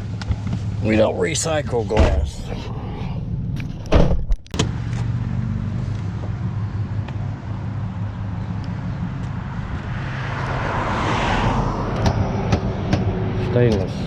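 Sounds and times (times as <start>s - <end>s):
truck engine humming: 0.0s - 10.8s.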